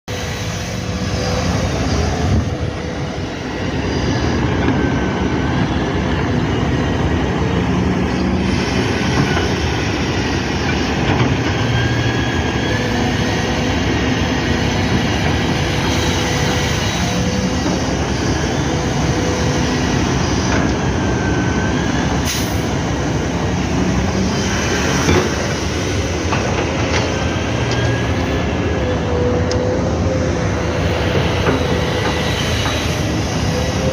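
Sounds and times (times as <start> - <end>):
excavator diesel drone: 0.1 - 33.9
hydraulics whining: 0.1 - 33.9.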